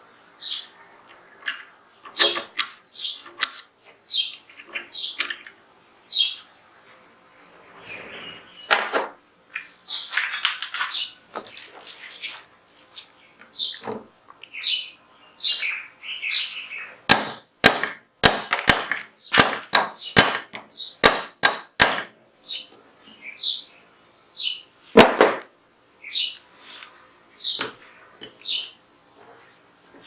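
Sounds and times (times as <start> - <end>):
loud knock: 17.1 - 22.1, 25.0 - 25.5.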